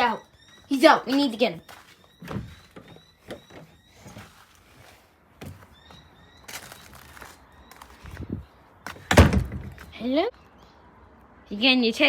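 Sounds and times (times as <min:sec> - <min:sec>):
bird chirps: 0:00.0 - 0:04.6, 0:05.6 - 0:09.1.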